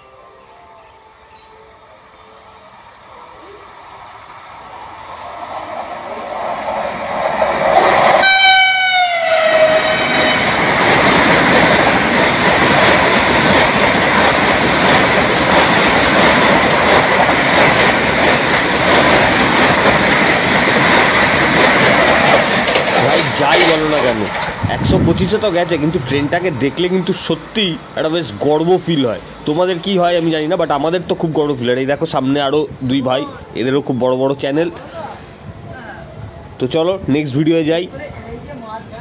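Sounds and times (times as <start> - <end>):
train rushing past: 0.0 - 39.0
train horn blast: 8.2 - 10.6.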